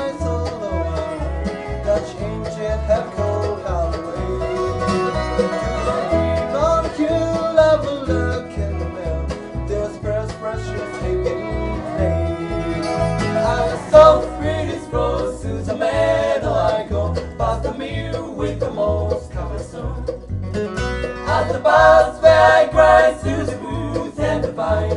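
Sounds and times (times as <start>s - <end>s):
acoustic guitar: 0.0s - 24.9s
picked banjo: 0.0s - 24.9s
steady bass beat: 10.0s - 24.9s.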